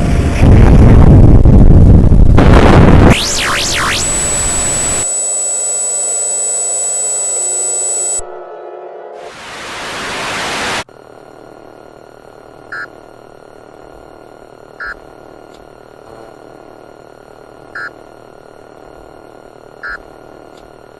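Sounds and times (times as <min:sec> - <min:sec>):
electronic hum and hiss: 0:00.0 - 0:08.2, 0:09.3 - 0:20.9
white noise static rush: 0:00.0 - 0:08.2, 0:09.3 - 0:20.9
short electronic beeps: 0:03.1 - 0:08.2.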